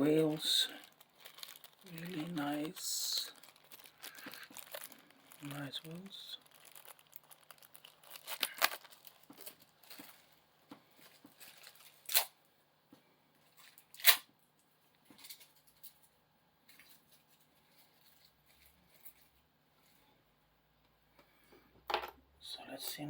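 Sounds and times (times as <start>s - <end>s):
packaging tearing: 0.0s - 10.4s, 11.0s - 12.4s, 13.6s - 14.3s
packaging rustling and clicking: 0.6s - 12.3s.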